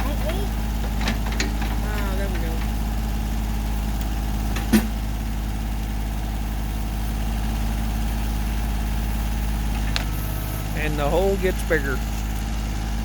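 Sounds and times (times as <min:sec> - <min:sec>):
tractor engine idling: 0:00.0 - 0:13.0.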